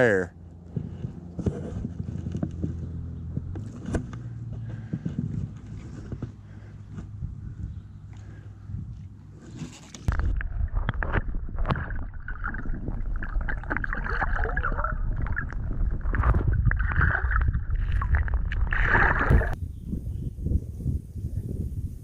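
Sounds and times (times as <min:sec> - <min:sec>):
water sloshing and splashing: 0:08.9 - 0:19.6
low rumble: 0:10.1 - 0:22.0.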